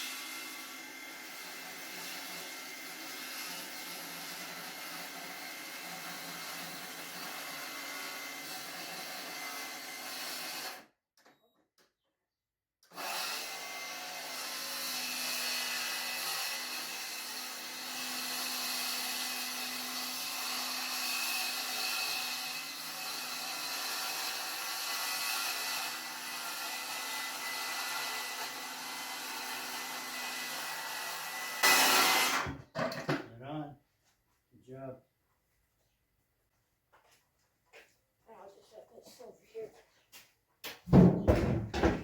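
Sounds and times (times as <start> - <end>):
power saw cutting board: 0.0 - 10.8, 12.9 - 32.7.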